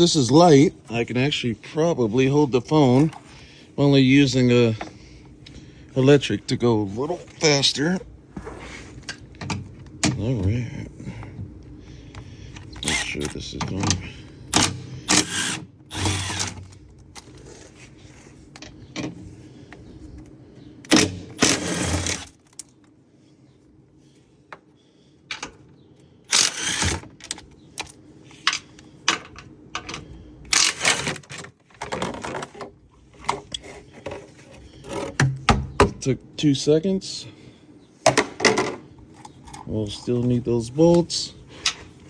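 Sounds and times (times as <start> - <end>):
loosened parts clicking and rattling: 12.1 - 23.0, 25.3 - 36.1, 38.0 - 42.0
electric wrench spinning bolts: 12.7 - 13.4, 14.6 - 16.8, 20.9 - 22.4, 26.3 - 27.1, 30.5 - 31.2.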